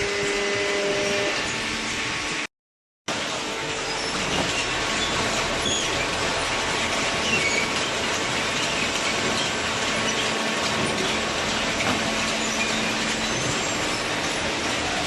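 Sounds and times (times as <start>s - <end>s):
machinery rattling: 3.1s - 15.0s
short high squeaks: 3.8s - 6.1s.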